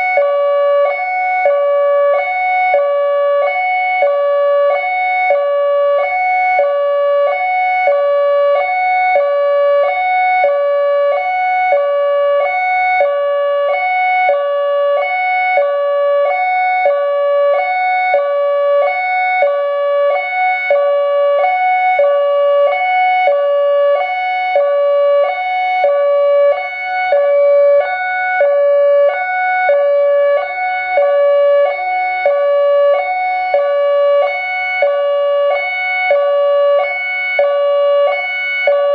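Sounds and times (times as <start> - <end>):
electronic siren hi-lo tone: 0.0 - 38.9.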